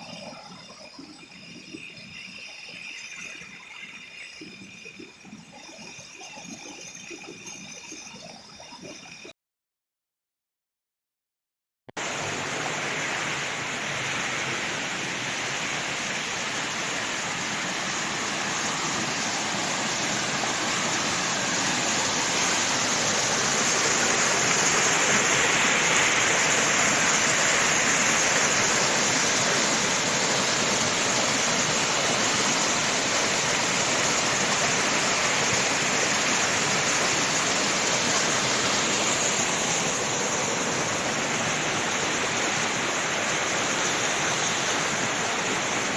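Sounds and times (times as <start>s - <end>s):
waterfall rushing: 12.0s - 45.9s.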